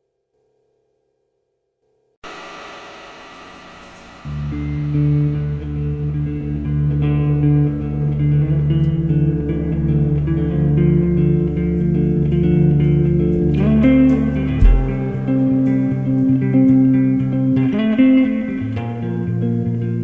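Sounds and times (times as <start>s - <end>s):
instrumental rock music: 4.2s - 20.0s.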